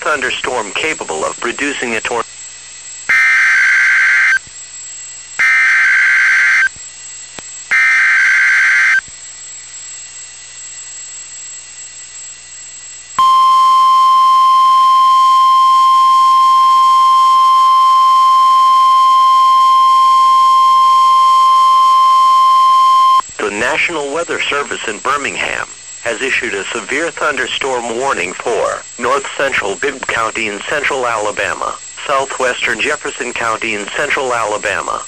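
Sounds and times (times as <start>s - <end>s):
single-tone warning alarm: 3.0s - 6.8s, 7.7s - 9.1s, 13.2s - 23.3s
warbling data screech: 3.1s - 4.4s, 5.4s - 6.7s, 7.7s - 9.0s, 13.2s - 23.6s.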